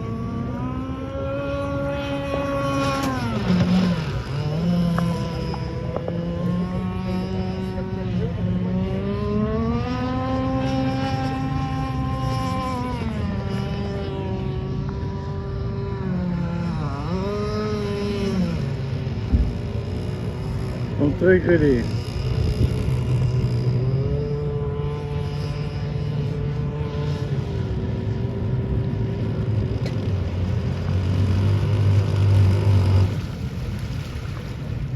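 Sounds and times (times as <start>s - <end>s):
two-stroke boat engine running: 0.0s - 34.9s.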